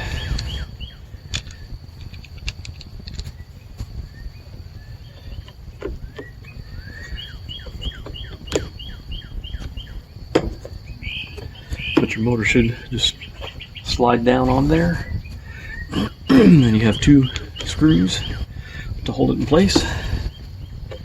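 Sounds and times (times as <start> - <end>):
bird chirping: 0.0 - 21.0
faint high insect-like tone: 0.0 - 21.0
plastic parts clicking and knocking: 1.3 - 3.3, 7.6 - 8.9, 9.6 - 12.2.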